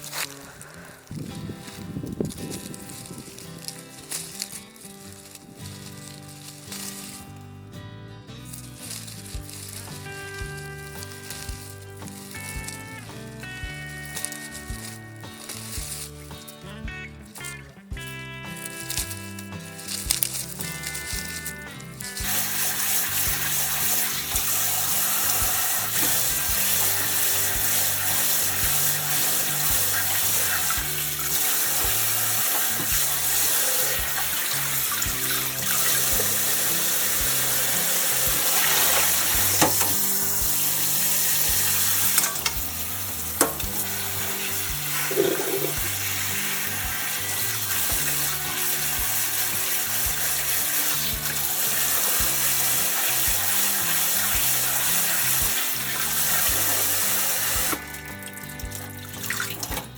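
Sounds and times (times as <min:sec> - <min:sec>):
background music: 0:00.0 - 0:59.9
tap water running into sink: 0:19.9 - 0:59.9.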